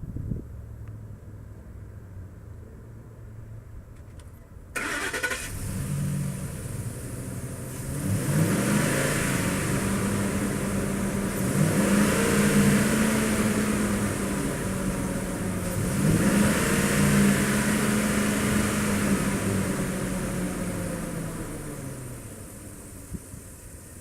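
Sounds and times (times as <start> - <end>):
engine starter cranking: 4.8 - 5.7
truck engine running and revving: 4.8 - 24.0.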